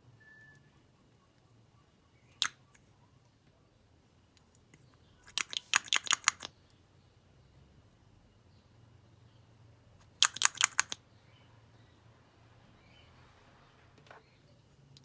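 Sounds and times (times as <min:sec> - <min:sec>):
slime popping and crackling: 0:05.3 - 0:06.5, 0:10.2 - 0:11.0.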